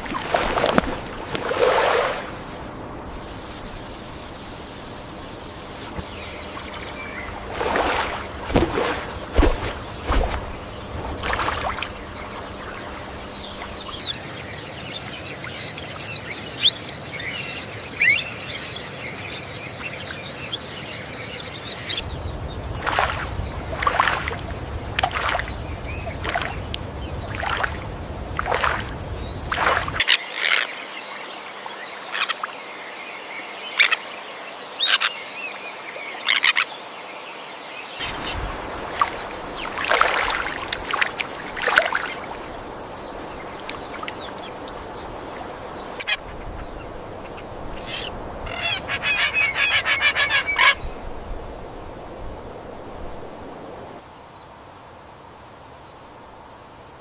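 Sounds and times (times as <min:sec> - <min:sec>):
background hiss: 0:00.0 - 0:30.1, 0:30.8 - 0:57.0
birds chirping and calling: 0:38.0 - 0:51.0.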